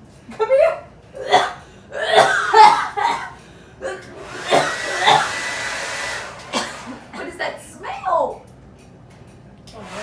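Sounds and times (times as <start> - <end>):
people talking: 0.3 - 0.9, 7.2 - 8.5
hair dryer running: 4.0 - 7.1, 9.7 - 10.0.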